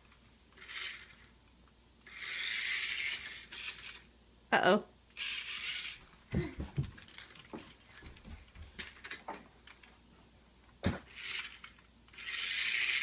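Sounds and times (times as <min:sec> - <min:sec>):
small electric motor whirring: 0:00.6 - 0:01.3, 0:02.0 - 0:04.0, 0:05.2 - 0:06.0, 0:11.1 - 0:13.0.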